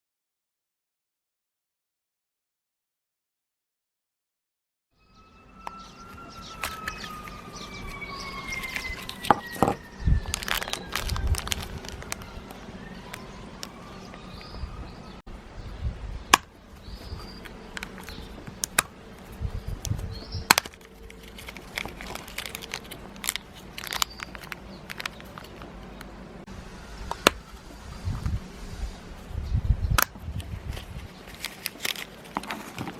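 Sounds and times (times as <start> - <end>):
falling tone: 5.0 - 15.2
crinkling plastic wrappers: 6.5 - 13.8, 17.4 - 25.7, 30.6 - 32.9
plastic capsules clicking and cracking: 9.0 - 13.7, 20.5 - 26.1.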